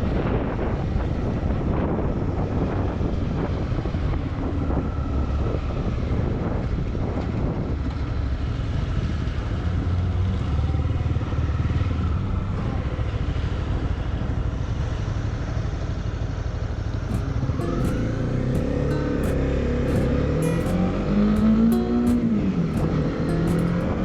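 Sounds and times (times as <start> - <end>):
motorcycle engine running: 17.1 - 24.0.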